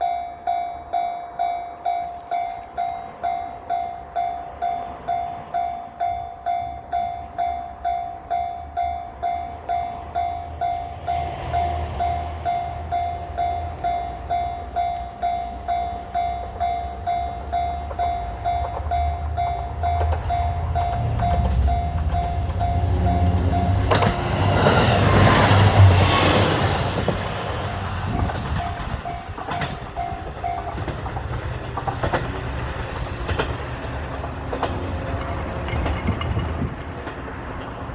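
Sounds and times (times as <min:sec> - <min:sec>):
level-crossing warning bell: 0:00.0 - 0:31.2, 0:32.9 - 0:37.9
diesel railcar rumble: 0:00.0 - 0:37.9
train wheels clattering over joints: 0:17.7 - 0:37.9.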